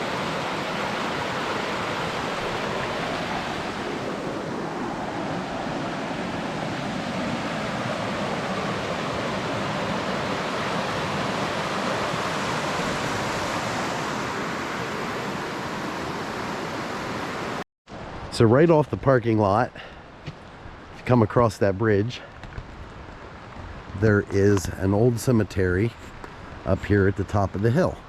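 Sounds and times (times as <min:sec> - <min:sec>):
stream rushing over rocks: 0:00.0 - 0:18.7.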